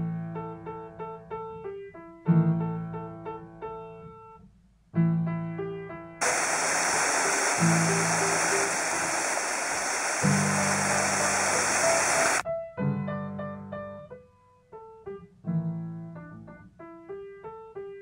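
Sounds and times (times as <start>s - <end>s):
waterfall rushing: 6.2s - 12.4s.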